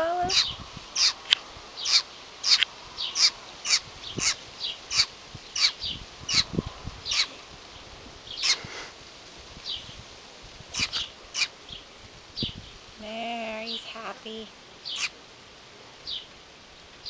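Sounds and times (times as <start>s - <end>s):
baby bird cheeping: 0.2s - 7.4s, 8.3s - 8.7s, 10.7s - 11.5s, 14.9s - 15.1s.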